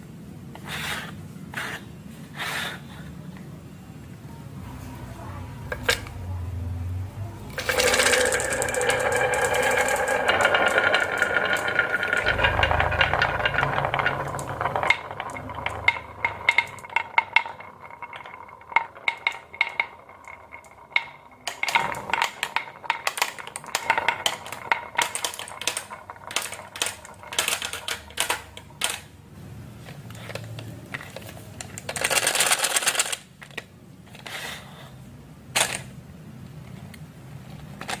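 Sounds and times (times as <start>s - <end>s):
marbles clicking on wooden track: 7.5s - 29.1s, 30.4s - 33.5s
marbles rattling: 7.5s - 29.1s
marbles rolling whir: 7.5s - 29.1s, 31.3s - 33.2s.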